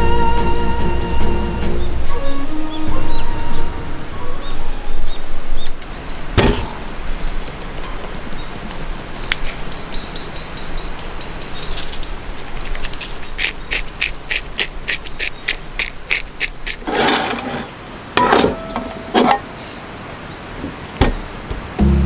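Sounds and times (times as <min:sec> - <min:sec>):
rustling: 0:05.7 - 0:19.7
knocks: 0:06.4 - 0:06.8, 0:20.7 - 0:22.0
rapid mechanical clicks: 0:07.0 - 0:16.9.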